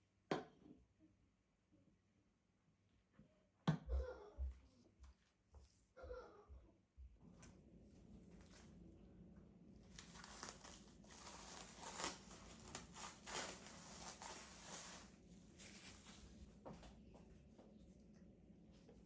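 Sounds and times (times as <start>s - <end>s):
wrapping crinkling and rustling: 9.8s - 16.6s.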